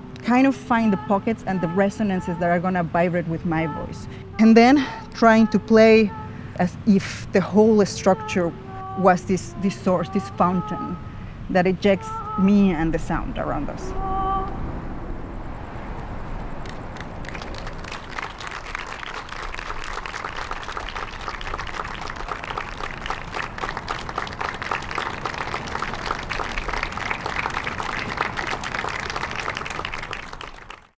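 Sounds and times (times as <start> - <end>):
audience applauding: 15.9 - 31.0.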